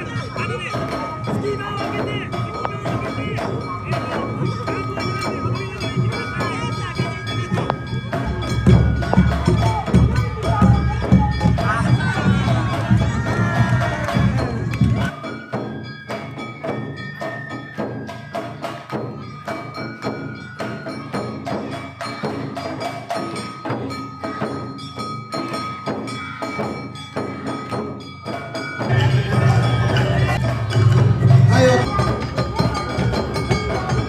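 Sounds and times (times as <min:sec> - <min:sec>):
high melody: 0:00.0 - 0:12.3
percussion beat: 0:00.0 - 0:34.0.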